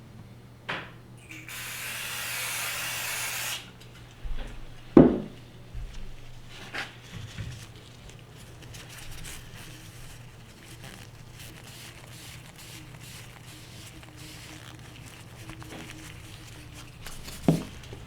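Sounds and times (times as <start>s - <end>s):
cloth rustling: 4.5s - 18.0s.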